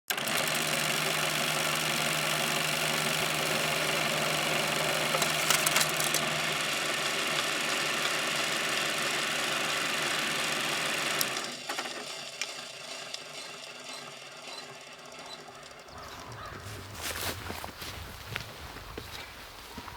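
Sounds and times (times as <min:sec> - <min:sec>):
electric power tool running: 0:00.0 - 0:18.5
clicks and handling noise: 0:03.0 - 0:06.5.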